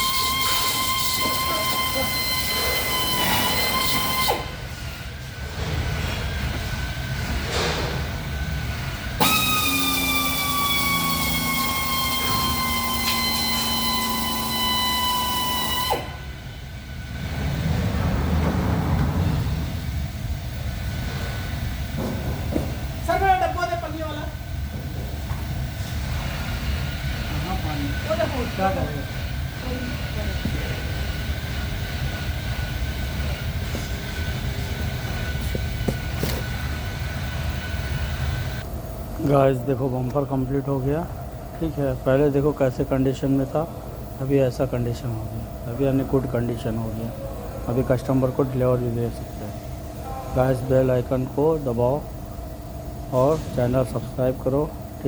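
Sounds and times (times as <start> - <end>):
machine high whine winding down: 0.0 - 22.1, 22.8 - 38.8
low mechanical rumble: 0.0 - 55.0
low rumble: 17.0 - 22.6.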